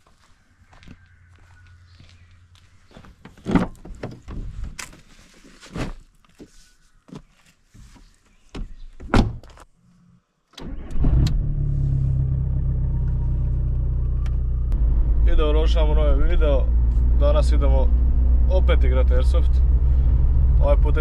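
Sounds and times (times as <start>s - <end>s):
car engine running: 11.3s - 21.0s.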